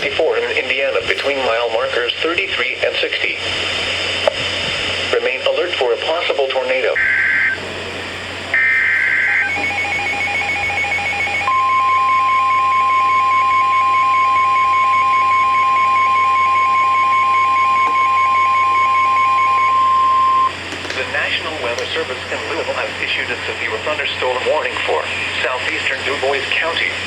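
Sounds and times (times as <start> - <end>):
steady warning alarm tone: 6.2 - 20.6
harsh buzzing data bursts: 8.5 - 20.5
rapid beeping alert: 8.6 - 20.5.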